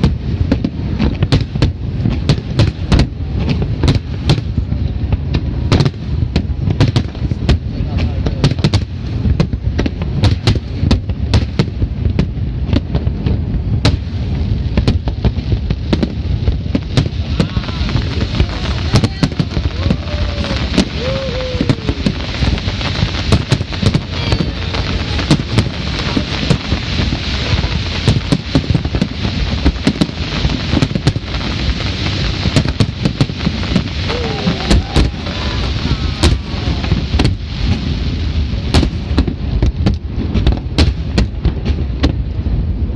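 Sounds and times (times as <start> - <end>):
fireworks booming: 0.0 - 42.9
fireworks crackling bangs: 0.0 - 42.9
low rumble: 0.0 - 42.9
crowd voices: 17.1 - 22.8, 23.7 - 27.8, 33.6 - 37.7.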